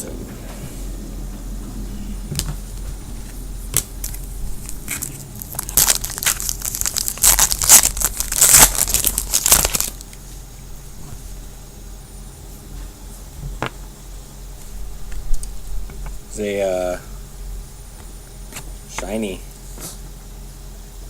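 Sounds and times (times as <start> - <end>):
foil wrapper crinkling and tearing: 3.8 - 10.1.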